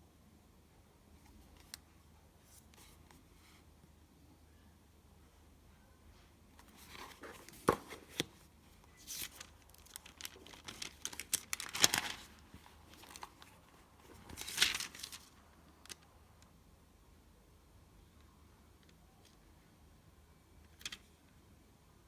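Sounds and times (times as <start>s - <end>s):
book pages rustling: 6.6s - 16.0s.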